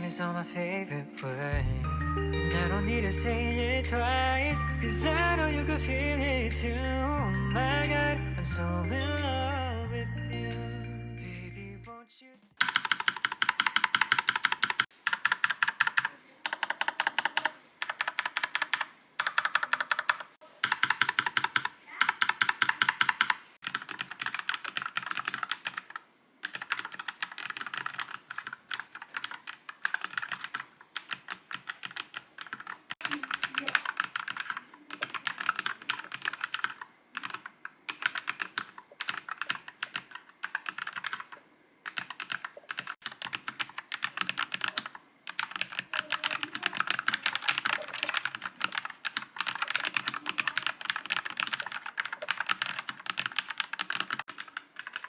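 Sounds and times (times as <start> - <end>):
mechanical keyboard typing: 12.6 - 55.0.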